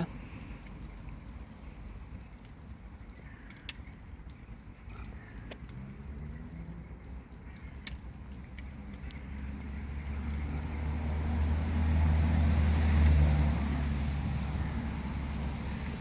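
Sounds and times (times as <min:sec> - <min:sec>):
light rain ticking: 0:00.0 - 0:16.0
vehicle engine hum: 0:04.4 - 0:16.0.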